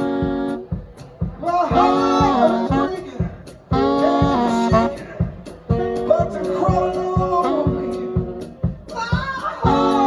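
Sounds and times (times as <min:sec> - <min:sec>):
steady drum beat: 0:00.0 - 0:10.0
saxophone sliding phrases: 0:01.7 - 0:05.1.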